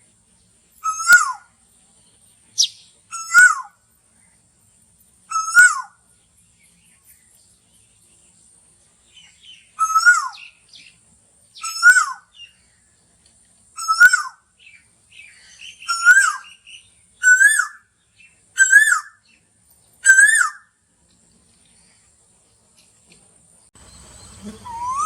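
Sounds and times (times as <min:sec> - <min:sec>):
faint bird chirps: 0:00.0 - 0:25.0
koel calling: 0:24.4 - 0:25.0.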